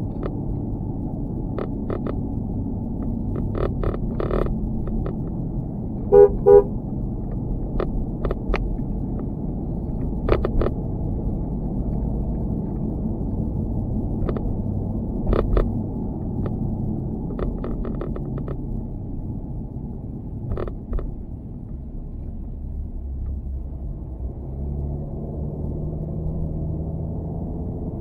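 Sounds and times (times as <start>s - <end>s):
low rumble of moving vehicle: 0.0s - 28.0s
vehicle horn toots: 6.1s - 6.8s
loose mount clicks and rattles: 10.0s - 10.8s, 17.3s - 18.6s.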